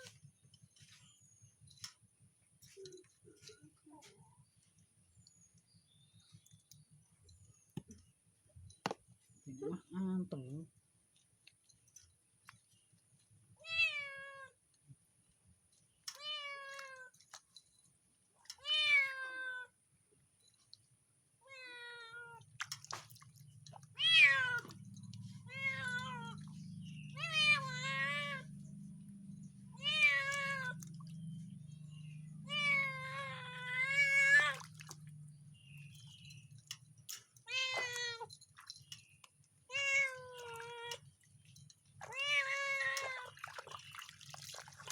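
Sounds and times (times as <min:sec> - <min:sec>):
cat meowing: 0:13.6 - 0:14.5, 0:18.6 - 0:19.7, 0:21.5 - 0:22.4, 0:24.0 - 0:24.8, 0:25.4 - 0:26.5, 0:27.2 - 0:28.6, 0:29.7 - 0:30.9, 0:32.4 - 0:34.7, 0:37.4 - 0:38.3, 0:39.7 - 0:41.0, 0:42.0 - 0:43.4.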